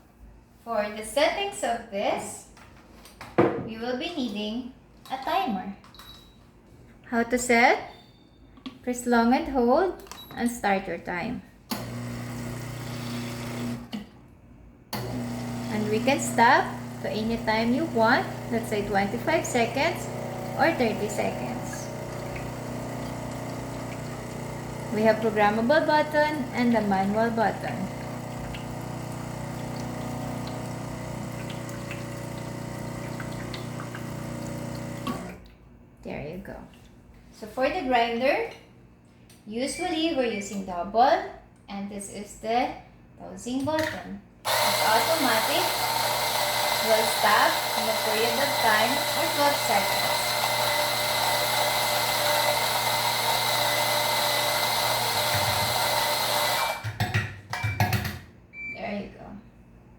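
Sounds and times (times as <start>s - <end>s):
espresso machine pump humming: 11.7s - 14.0s, 15.0s - 35.4s, 44.5s - 56.8s
coffee grinder motor whine: 11.8s - 13.9s, 15.0s - 35.4s, 44.5s - 56.9s.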